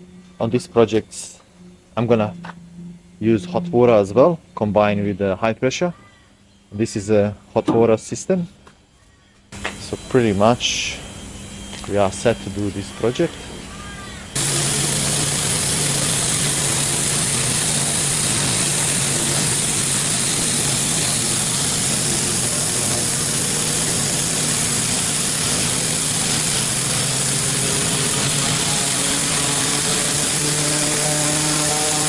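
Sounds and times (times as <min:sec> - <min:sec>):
petrol engine running: 0:09.6 - 0:32.0
high-pressure water jet hissing: 0:14.4 - 0:32.0.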